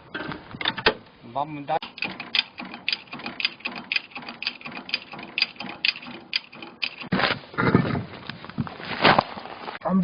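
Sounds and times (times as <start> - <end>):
ratchet clicking: 1.8 - 7.1.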